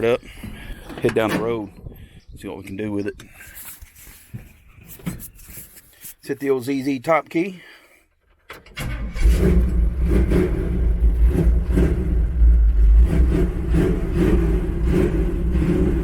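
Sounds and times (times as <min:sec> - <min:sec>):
car engine starting and running: 0:08.3 - 0:16.0.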